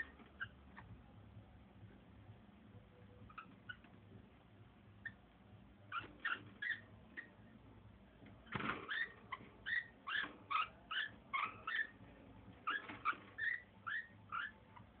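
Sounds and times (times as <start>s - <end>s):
pet breathing with squeaks: 3.3s - 3.9s, 5.9s - 7.3s, 8.9s - 12.0s, 12.6s - 15.0s.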